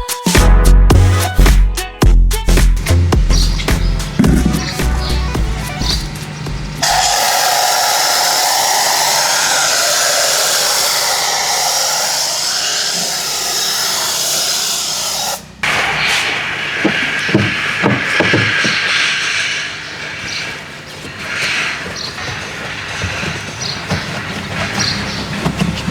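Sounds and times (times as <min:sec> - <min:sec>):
pressure washer spraying: 0:02.8 - 0:23.0
knocks: 0:03.1 - 0:06.6, 0:15.7 - 0:19.5.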